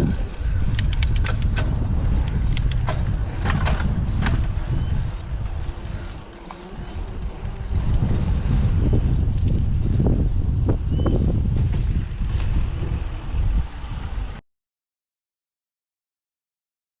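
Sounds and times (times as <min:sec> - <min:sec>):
wind buffeting microphone: 0:00.0 - 0:14.4
sharp clicks and knocks: 0:00.7 - 0:04.5.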